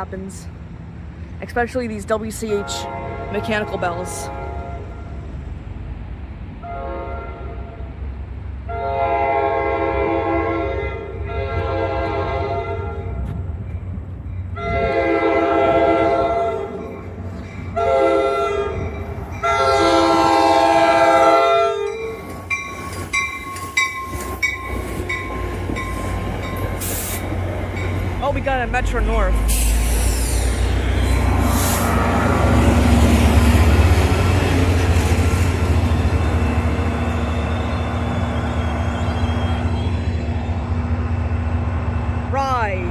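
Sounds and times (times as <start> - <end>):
low train rumble: 0.0 - 42.9
train horn blasts: 2.6 - 5.2, 6.6 - 7.9, 8.7 - 13.1, 14.6 - 16.9, 17.7 - 22.1.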